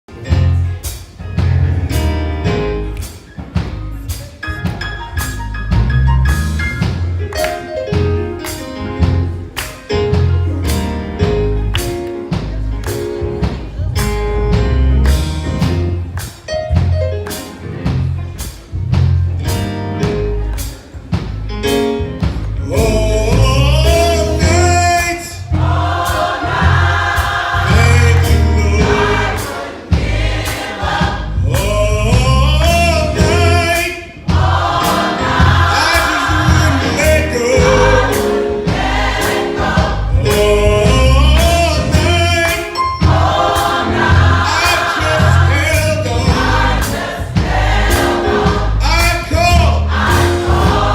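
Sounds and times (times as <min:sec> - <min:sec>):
band playing: 0:00.1 - 0:50.9
bass line: 0:00.2 - 0:50.9
gospel choir singing: 0:22.6 - 0:50.9.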